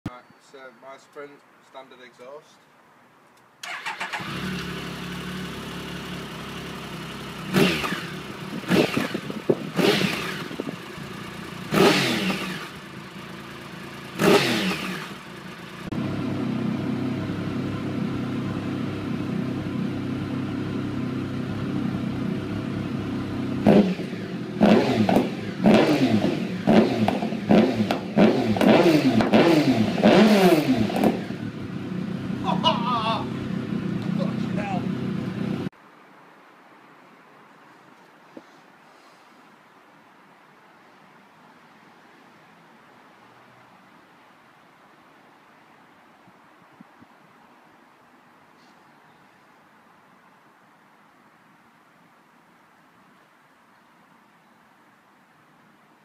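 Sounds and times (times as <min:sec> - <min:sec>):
motorcycle engine revving: 0:03.6 - 0:35.7.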